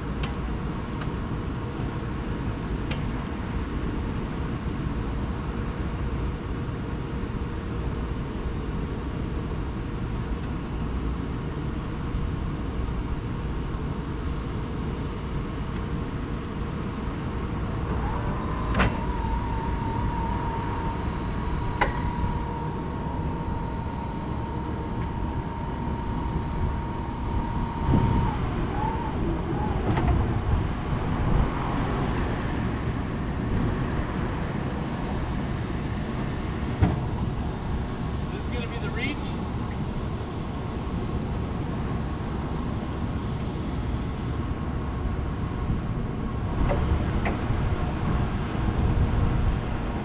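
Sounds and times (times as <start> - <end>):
steady low rumble: 0.0 - 50.0
electric motor whine: 17.6 - 38.3.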